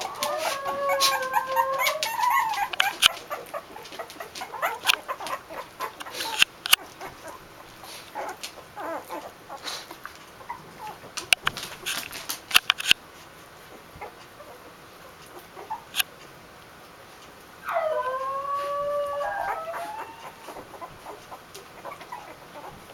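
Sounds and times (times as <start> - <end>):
puppy crying: 0.0 - 9.8, 10.4 - 11.1, 15.3 - 16.0, 17.6 - 22.8
puppies squeaking and whimpering: 0.0 - 11.1, 13.7 - 16.0, 17.6 - 22.8
small clicks: 6.0 - 6.8, 11.2 - 13.0.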